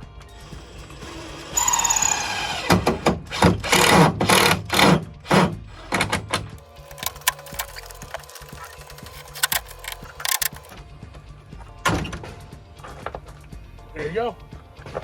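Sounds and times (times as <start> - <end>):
cordless drill driving screw: 0.3 - 10.7.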